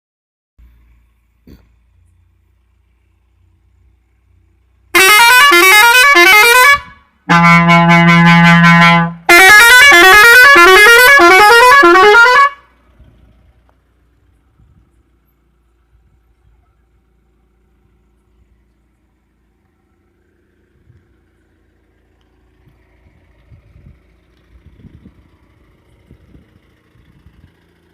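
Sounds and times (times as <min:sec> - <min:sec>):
musical air horn: 0:04.9 - 0:12.6.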